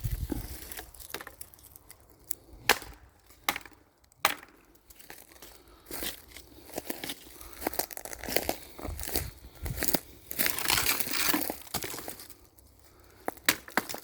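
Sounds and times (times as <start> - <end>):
footsteps crunching leaves: 0.0 - 2.2, 4.8 - 13.0.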